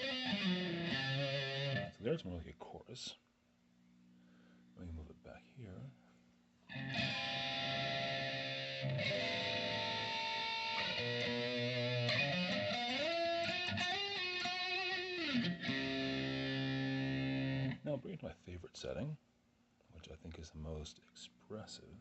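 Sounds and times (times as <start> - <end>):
distorted electric guitar with flanger: 0.0 - 2.0, 6.7 - 17.9.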